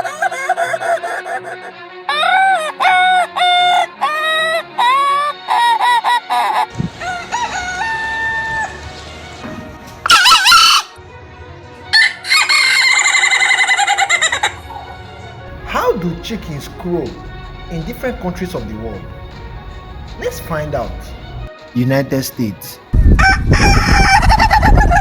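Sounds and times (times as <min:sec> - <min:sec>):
rooster crowing: 0:06.7 - 0:08.9, 0:10.0 - 0:11.0, 0:11.9 - 0:14.8, 0:23.0 - 0:25.0
loud short chicken call: 0:10.1 - 0:11.0
chickens clucking: 0:12.1 - 0:14.9.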